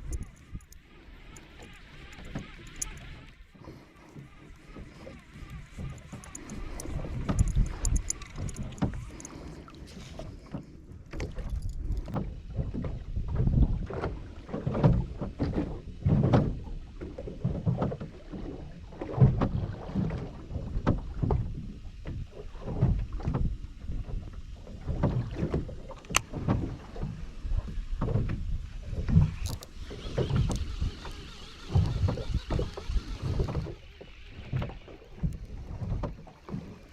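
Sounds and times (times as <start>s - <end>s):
sharp clicks: 0.0s - 3.4s, 4.0s - 9.5s
water slapping against boat hull: 0.0s - 36.9s.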